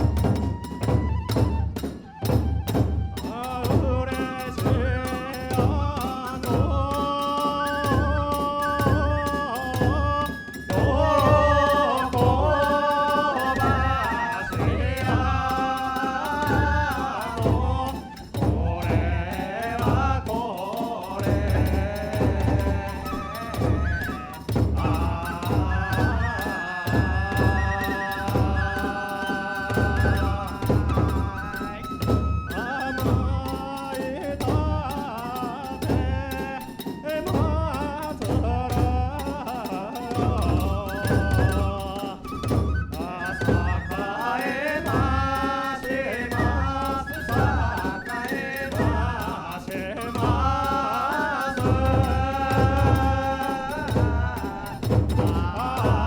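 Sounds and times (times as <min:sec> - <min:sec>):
large drum beating: 0:00.0 - 0:12.7, 0:13.5 - 0:33.6, 0:51.5 - 0:56.0.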